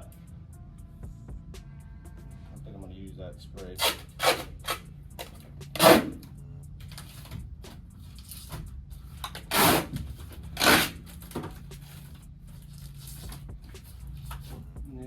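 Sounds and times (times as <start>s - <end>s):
tape ripping off a roll: 9.2s - 11.4s.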